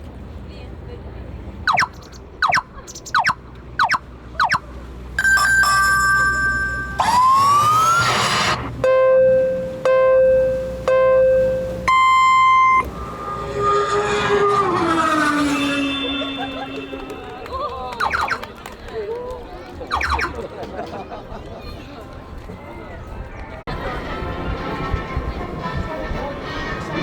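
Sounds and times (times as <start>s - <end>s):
comic whistle and horn toots: 5.2s - 8.7s, 11.9s - 18.5s.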